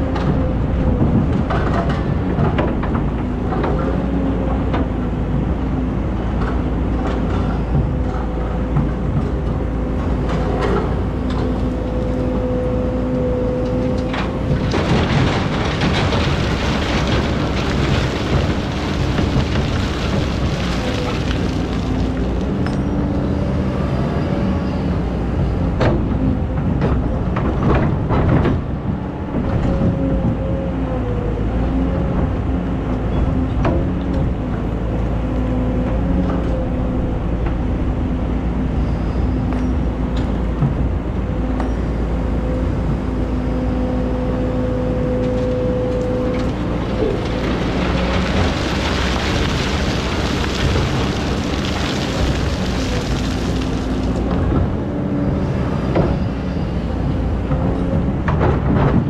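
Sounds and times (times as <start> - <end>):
excavator diesel engine running: 0.0 - 23.2, 40.2 - 59.0
knocks and clanks: 14.0 - 22.8.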